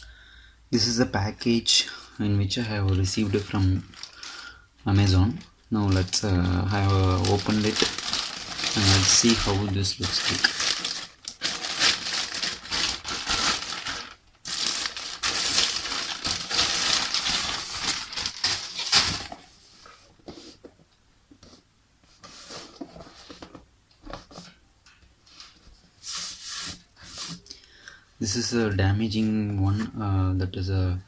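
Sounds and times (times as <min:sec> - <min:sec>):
package packaging tearing: 0:06.8 - 0:19.4.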